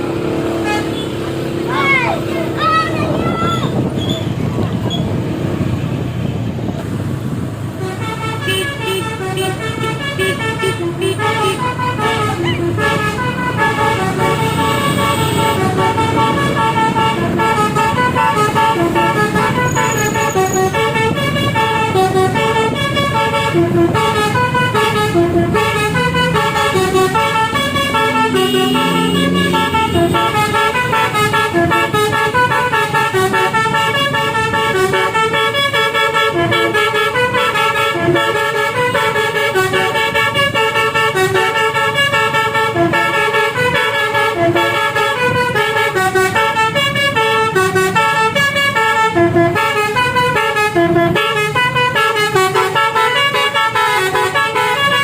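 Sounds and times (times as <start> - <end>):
diesel engine running: 0.0 - 42.1
musical air horns melody: 0.3 - 1.5, 7.7 - 55.0.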